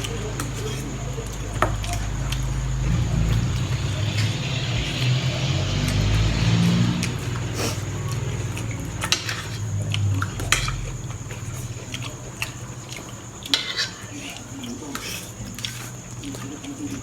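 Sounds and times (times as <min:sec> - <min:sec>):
low hum: 0:01.1 - 0:12.4
cutlery clinking on a plate: 0:08.6 - 0:17.0.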